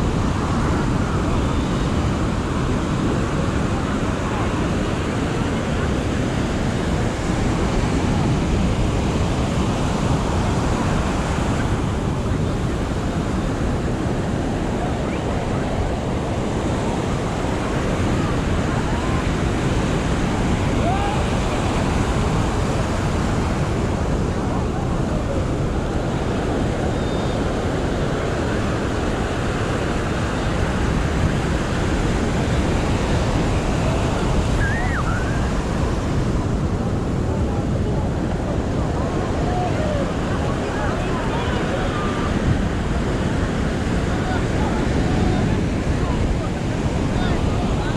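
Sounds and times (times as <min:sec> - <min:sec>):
faint voices: 0:00.0 - 0:47.9
ocean surf on sandy beach: 0:00.0 - 0:47.9
wind buffeting microphone: 0:00.0 - 0:47.9
faint whistle-like sound: 0:34.6 - 0:35.4.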